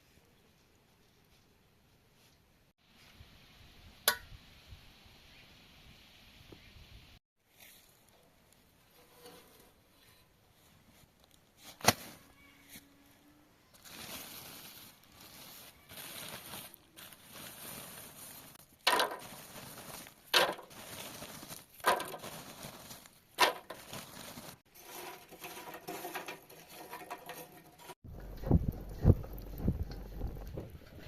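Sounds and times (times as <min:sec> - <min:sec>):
rustling: 0:13.7 - 0:31.0.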